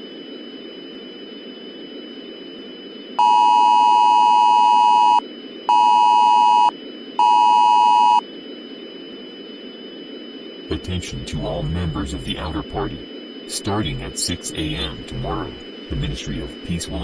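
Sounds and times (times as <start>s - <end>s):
static hiss: 8.3s - 17.0s.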